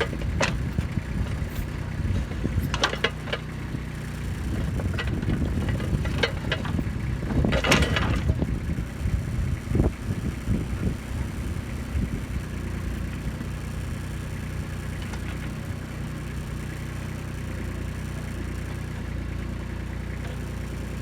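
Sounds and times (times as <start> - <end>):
bucket clanking on rock: 0.0 - 3.5, 4.5 - 8.4
grinding scrape: 0.0 - 8.3
tractor diesel engine running: 0.0 - 21.0.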